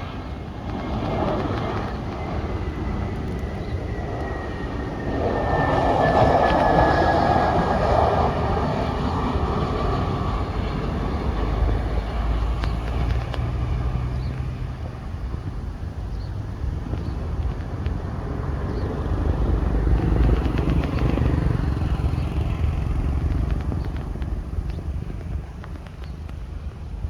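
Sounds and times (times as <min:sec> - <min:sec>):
jet engines roaring past: 0:00.0 - 0:27.0.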